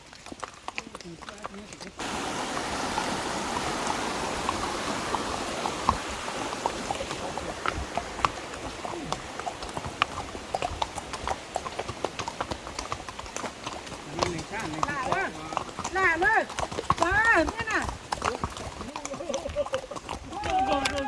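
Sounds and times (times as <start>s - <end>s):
horse hooves clip-clopping: 0.0s - 21.0s
steady hiss: 2.0s - 9.4s.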